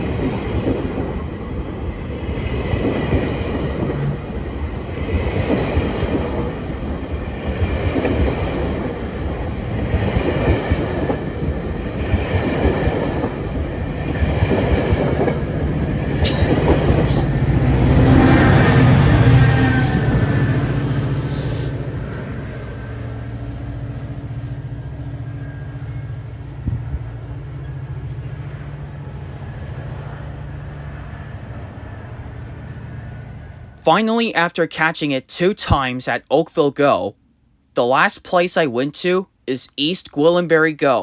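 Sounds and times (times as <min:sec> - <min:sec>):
train wheels rumbling and squealing: 0:00.0 - 0:33.9
diesel locomotive drone: 0:00.0 - 0:34.0.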